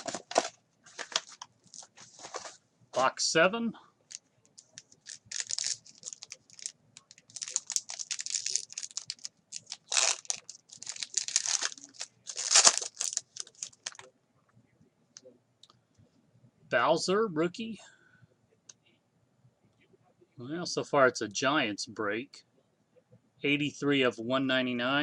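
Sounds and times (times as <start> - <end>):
plastic wrapping tearing and crinkling: 0.0 - 2.5, 4.6 - 14.0.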